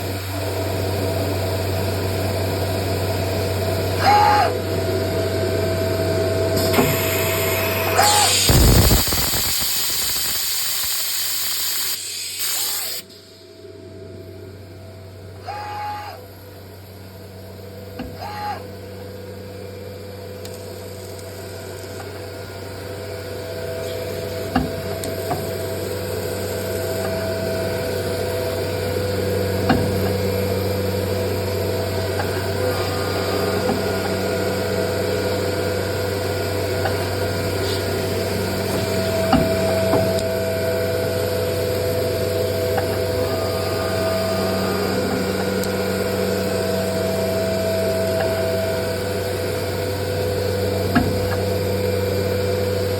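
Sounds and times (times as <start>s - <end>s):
router machine hum: 23.8s - 52.1s.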